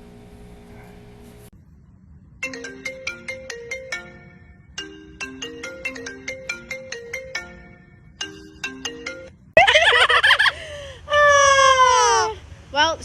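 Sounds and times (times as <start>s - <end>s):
marimba-like phone ringtone: 2.4s - 9.4s.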